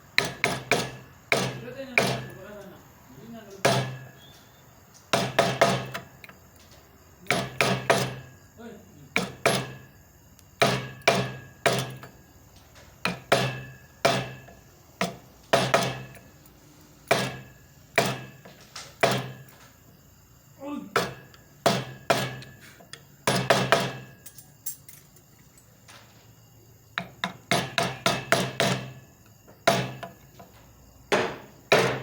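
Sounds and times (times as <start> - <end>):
mallet tapping chisel into wood: 0.2 - 2.4, 7.3 - 8.2, 13.0 - 16.1.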